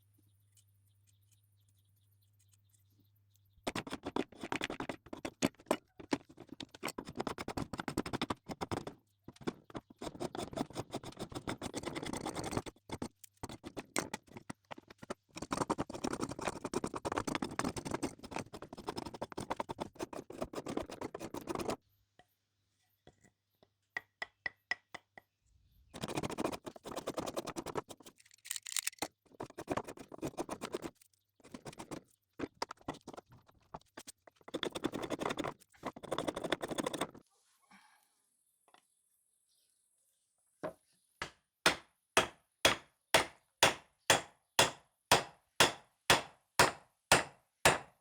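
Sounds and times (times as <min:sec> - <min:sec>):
hand abrasive scratching a surface: 0:15.4 - 0:21.8, 0:26.0 - 0:28.7.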